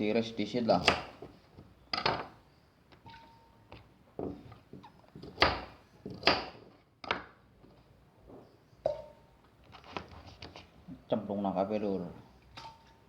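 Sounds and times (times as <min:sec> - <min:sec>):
knife chopping on wooden board: 0:00.8 - 0:01.3, 0:05.2 - 0:07.3.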